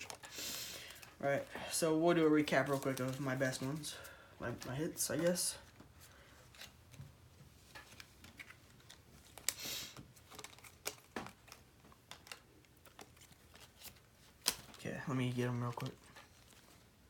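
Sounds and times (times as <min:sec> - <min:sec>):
cards rustling: 0:00.0 - 0:17.0
cards clicking and tapping: 0:07.7 - 0:14.8.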